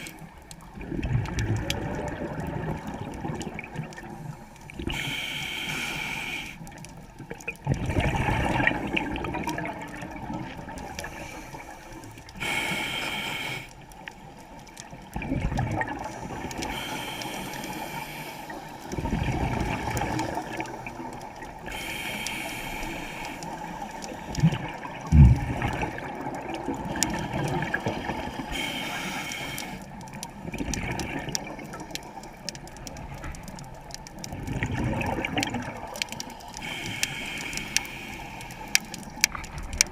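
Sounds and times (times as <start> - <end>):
exhaled bubbles rushing: 0.0 - 4.2, 7.5 - 11.1, 15.1 - 16.7, 18.8 - 21.7, 24.2 - 28.6, 30.3 - 36.6
regulator inhale hiss: 4.2 - 6.8, 11.0 - 13.9, 16.2 - 18.7, 21.7 - 24.2, 28.0 - 29.9, 36.4 - 38.8.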